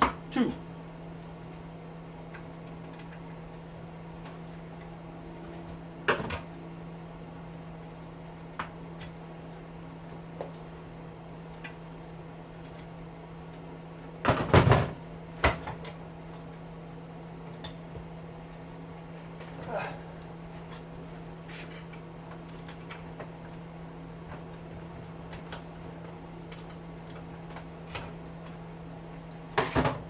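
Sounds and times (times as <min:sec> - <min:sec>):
steady low hum: 0:00.0 - 0:30.0
knocks and clatter of metal parts: 0:14.2 - 0:16.0.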